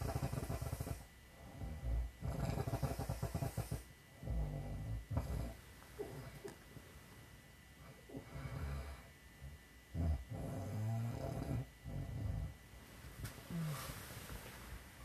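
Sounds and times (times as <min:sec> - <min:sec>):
woman snoring: 0:00.0 - 0:06.4, 0:08.1 - 0:09.1, 0:10.0 - 0:12.5, 0:13.5 - 0:14.1.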